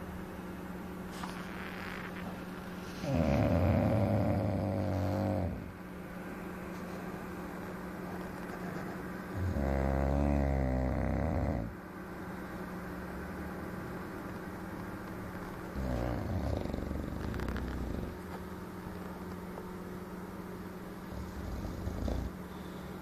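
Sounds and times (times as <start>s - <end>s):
low steady hum: 0.0s - 23.0s
dog snoring: 1.1s - 5.8s, 8.4s - 11.8s, 15.6s - 18.4s, 21.0s - 22.8s.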